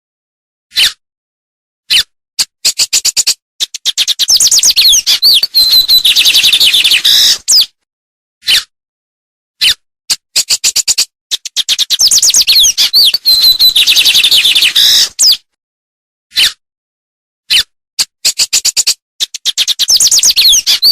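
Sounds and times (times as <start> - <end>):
songbird singing: 4.1 - 7.6, 11.8 - 15.4, 19.7 - 20.9.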